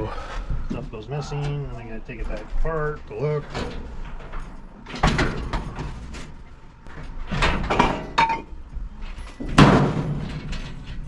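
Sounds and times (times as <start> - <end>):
sheet metal scraping and knocking: 7.2 - 8.6.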